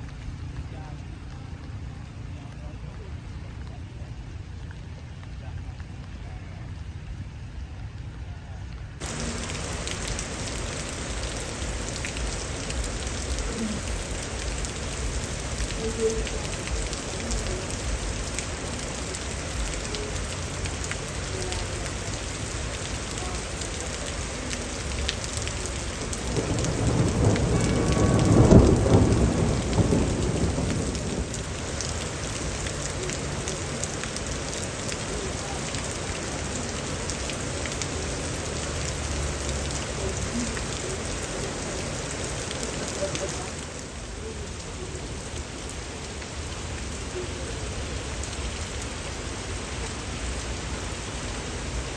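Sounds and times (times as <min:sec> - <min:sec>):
rain falling on leaves: 0:00.0 - 0:51.9
rolling thunder: 0:26.1 - 0:32.4.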